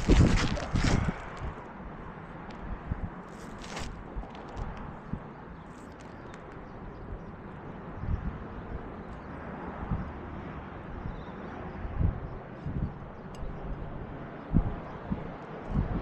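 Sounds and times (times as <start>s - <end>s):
outdoor background noise: 0.0s - 16.0s
dull low thumps: 9.8s - 10.2s, 11.9s - 16.0s.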